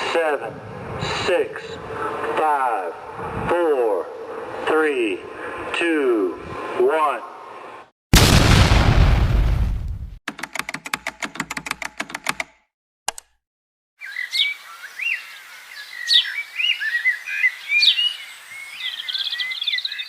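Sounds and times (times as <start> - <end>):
small birds chirping: 14.0 - 20.0.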